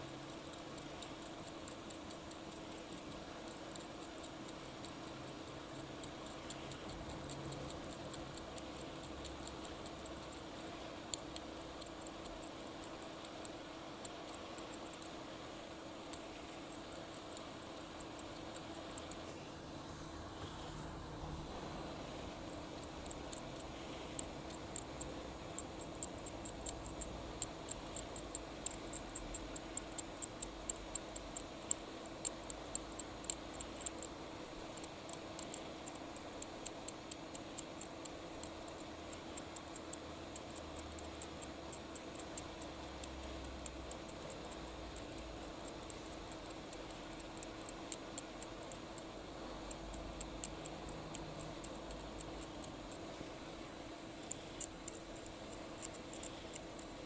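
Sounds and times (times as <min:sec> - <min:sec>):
faint high-pitched tool ticks: 0:00.0 - 0:19.3, 0:22.5 - 0:53.3, 0:54.0 - 0:57.0
low electrical hum: 0:00.0 - 0:57.0.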